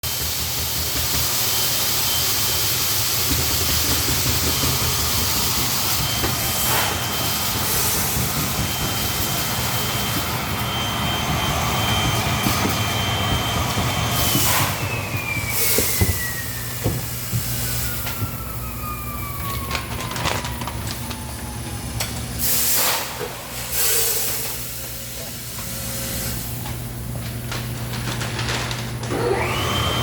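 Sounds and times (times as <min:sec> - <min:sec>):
packaging machine humming: 0:00.0 - 0:30.0
burst of hiss: 0:01.2 - 0:08.4, 0:22.4 - 0:26.5.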